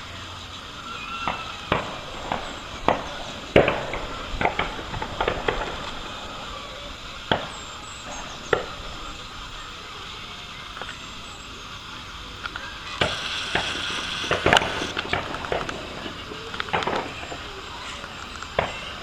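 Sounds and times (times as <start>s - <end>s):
sharp bangs: 13.0s - 17.2s.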